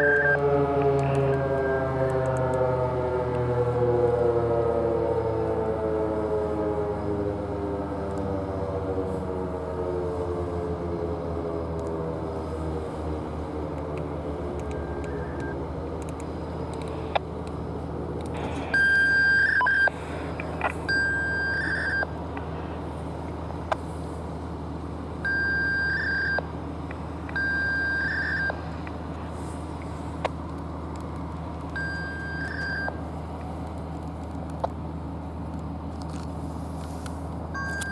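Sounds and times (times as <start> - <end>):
warning siren winding down: 0.0 - 22.8, 23.4 - 33.1
steady low hum: 0.0 - 37.9
sharp clicks: 13.8 - 17.6
high electronic beeps: 14.7 - 15.6, 18.7 - 19.9, 20.9 - 22.1, 31.8 - 32.9.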